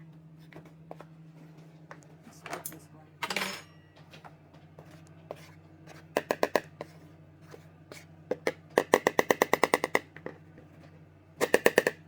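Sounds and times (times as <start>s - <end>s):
utensil clinking against bowl: 2.5s - 3.8s.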